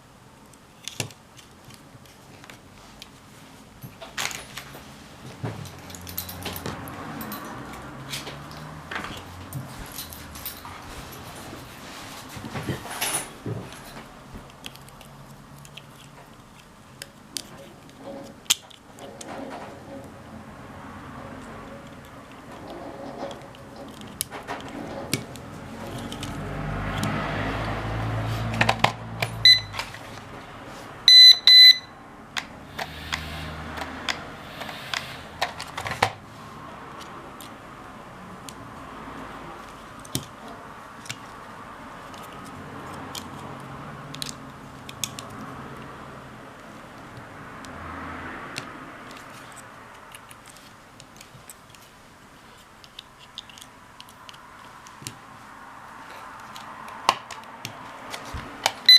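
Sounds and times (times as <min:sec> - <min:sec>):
handling clicks and taps: 0:12.4 - 0:19.4, 0:21.4 - 0:27.8, 0:39.6 - 0:41.4, 0:42.0 - 0:45.9, 0:48.5 - 0:55.4, 0:56.4 - 0:58.9.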